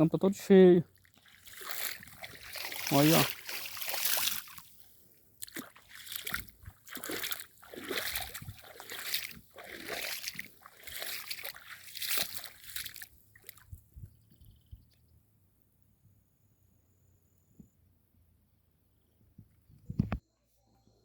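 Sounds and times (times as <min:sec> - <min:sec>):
footsteps splashing through water: 0:00.9 - 0:13.9.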